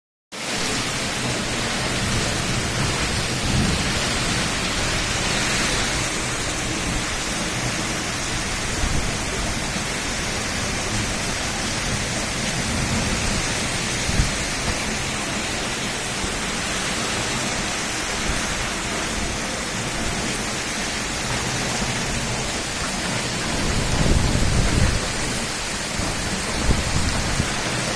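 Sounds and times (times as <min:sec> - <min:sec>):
heavy rain falling: 0:00.3 - 0:27.9
wind buffeting microphone: 0:01.8 - 0:15.1, 0:23.4 - 0:27.7.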